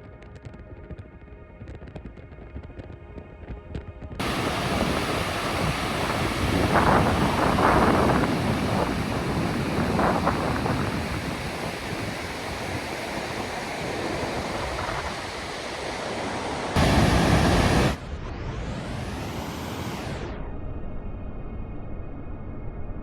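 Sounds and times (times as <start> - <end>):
outdoor rushing noise: 4.2 - 20.5.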